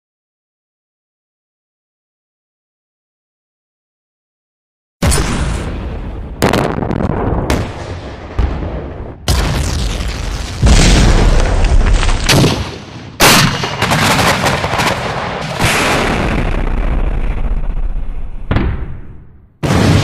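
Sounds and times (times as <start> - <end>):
explosion blasts with rumble: 5.0 - 20.0.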